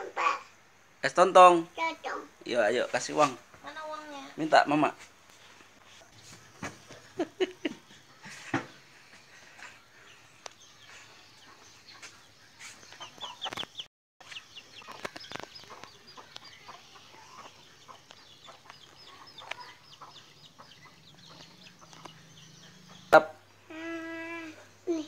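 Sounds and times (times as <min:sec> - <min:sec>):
faint birds chirping: 0:00.0 - 0:25.0.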